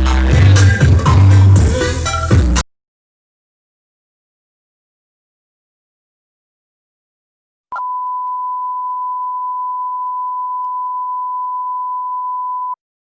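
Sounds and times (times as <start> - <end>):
steady test tone beep: 7.7 - 12.8.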